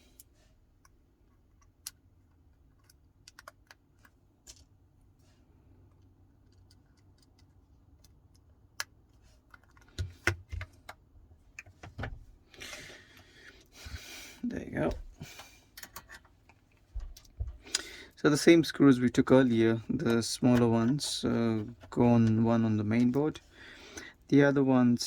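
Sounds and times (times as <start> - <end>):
small clicks and taps: 0.8 - 4.7.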